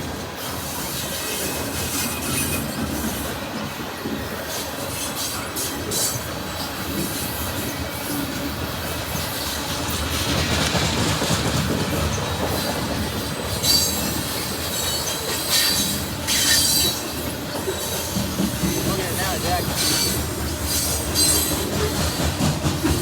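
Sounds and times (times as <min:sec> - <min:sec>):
train wheels rumbling and rattling: 0:00.0 - 0:23.0
high wheel squeals: 0:12.1 - 0:22.2.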